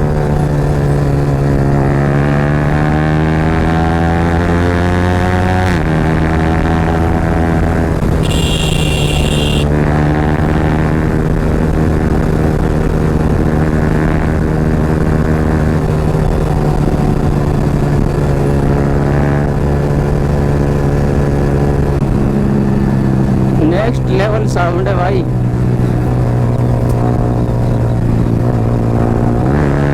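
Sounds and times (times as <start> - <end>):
motorcycle engine running loud: 0.0 - 24.0
brief high-pitched tone: 8.2 - 9.7.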